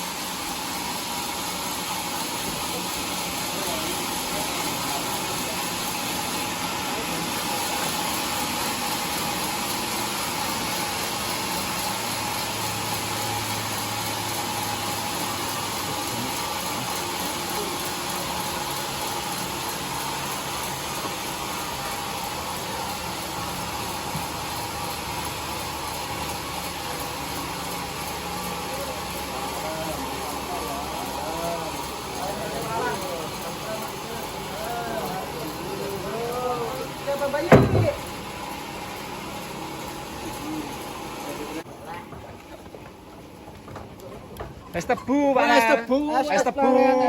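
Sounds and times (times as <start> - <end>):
sawmill machinery running: 0.0 - 47.0.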